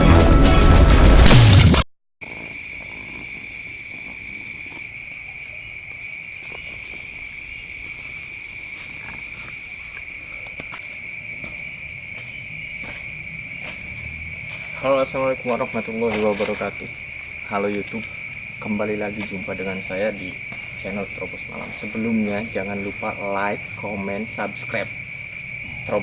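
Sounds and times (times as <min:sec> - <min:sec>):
insect high-pitched trill: 0:02.2 - 0:26.0
insects chirping in pulsed runs: 0:02.2 - 0:26.0.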